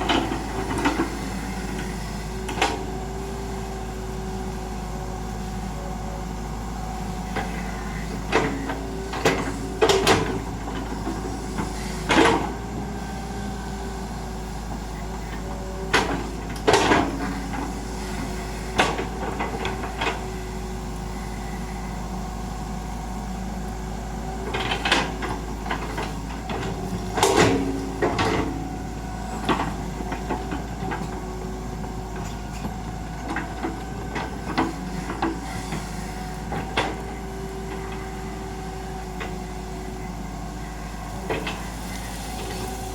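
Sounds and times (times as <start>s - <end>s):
excavator engine humming: 0.0s - 42.9s
metal clanks and knocks: 24.5s - 28.6s.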